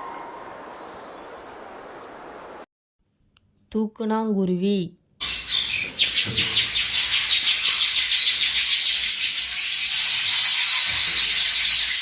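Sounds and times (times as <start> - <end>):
birds chattering: 5.2 - 12.0.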